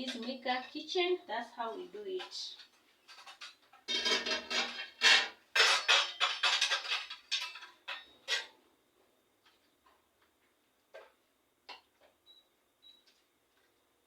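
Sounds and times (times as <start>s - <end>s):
spoon scraping and clinking a pot: 2.2s - 8.5s.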